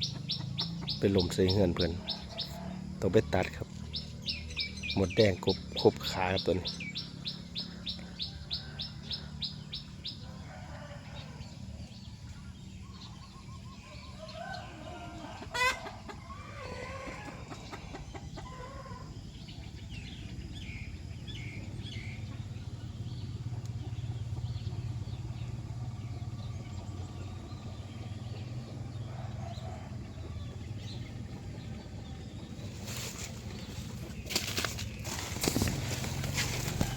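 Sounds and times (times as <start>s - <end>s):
chickens clucking: 0.0s - 4.2s, 11.8s - 20.4s
small bird chirping: 0.0s - 10.2s.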